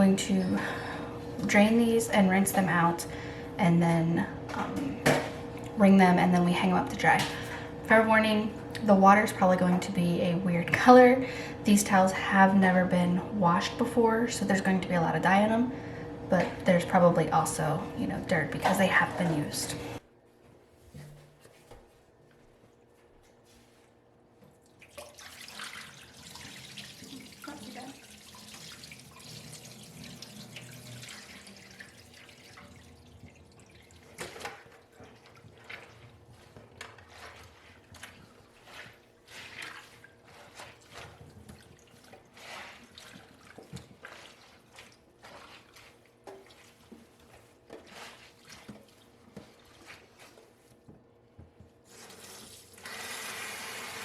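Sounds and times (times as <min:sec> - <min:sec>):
water pouring into sink: 0:24.6 - 0:36.2, 0:51.9 - 0:54.0
water splashing and dripping: 0:24.6 - 0:50.4.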